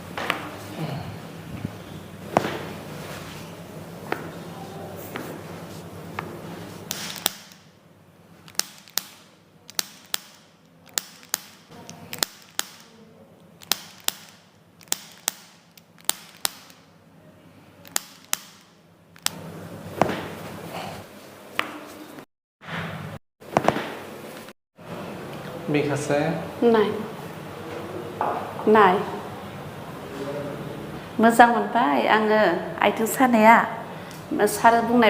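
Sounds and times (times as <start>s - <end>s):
sharp joint clicks: 8.4s - 16.8s.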